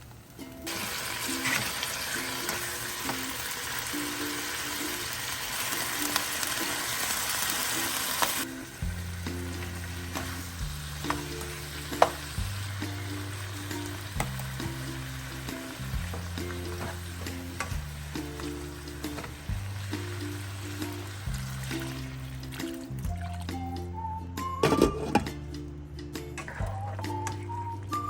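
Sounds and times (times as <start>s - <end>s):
light music with plucked notes: 0.3s - 28.0s
food sizzling in hot oil: 0.6s - 23.0s
bass line: 8.8s - 28.0s.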